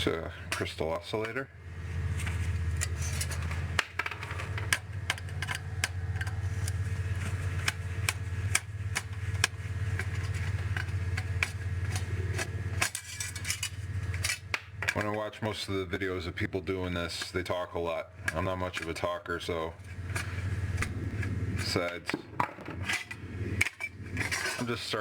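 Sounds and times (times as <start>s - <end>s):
steady low hum: 0.0s - 25.0s
hand tools clinking on metal: 8.9s - 15.2s.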